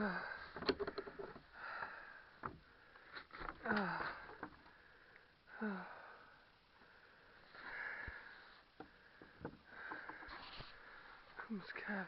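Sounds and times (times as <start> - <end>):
person breathing hard: 0.0 - 11.4
person groaning: 3.6 - 4.4.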